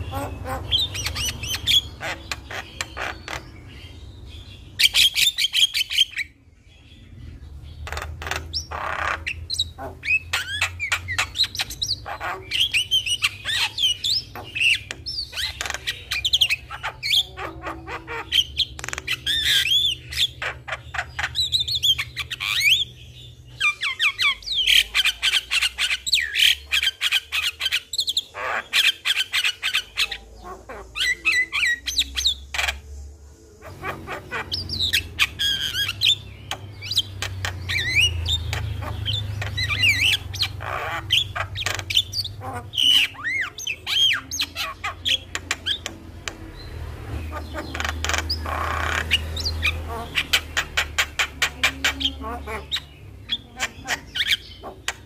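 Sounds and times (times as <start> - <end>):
myna bird singing: 0.0 - 55.0.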